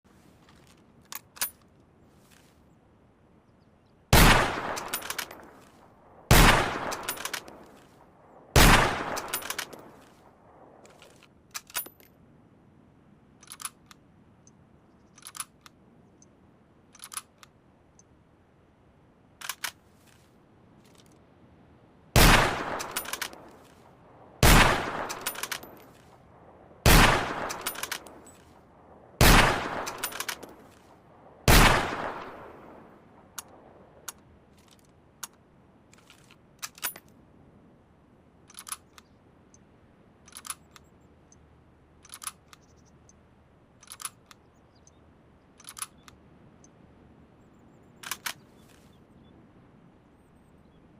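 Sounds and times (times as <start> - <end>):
rifle shots: 4.1 - 5.6, 6.3 - 7.8, 8.6 - 10.0, 22.2 - 23.5, 24.4 - 25.8, 26.8 - 28.3, 29.2 - 30.7, 31.5 - 32.8
sharp metallic clicks: 24.4 - 26.1, 26.9 - 28.5, 29.2 - 30.8, 38.5 - 41.4, 42.0 - 43.2, 43.8 - 45.0, 45.6 - 46.7, 48.0 - 48.5.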